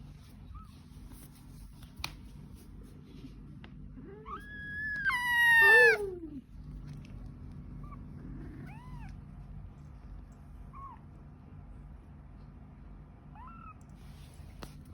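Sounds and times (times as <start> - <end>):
low steady hum: 0.0 - 14.9
cat mewing faintly: 4.0 - 6.4.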